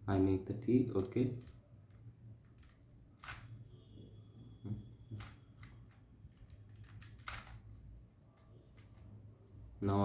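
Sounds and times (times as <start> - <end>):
puzzle cube clicking: 5.1 - 9.1.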